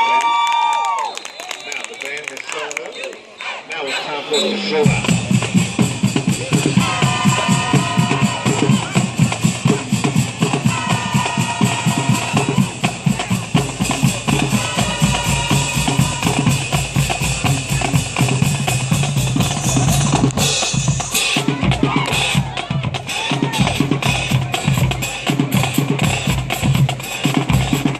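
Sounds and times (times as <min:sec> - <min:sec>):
short pitched phrases: 0:01.8 - 0:05.2
marching band drums: 0:04.8 - 0:27.9.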